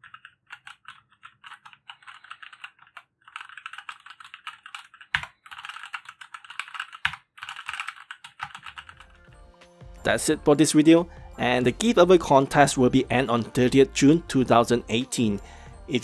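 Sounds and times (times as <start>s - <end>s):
mechanical keyboard typing: 0.0s - 9.1s.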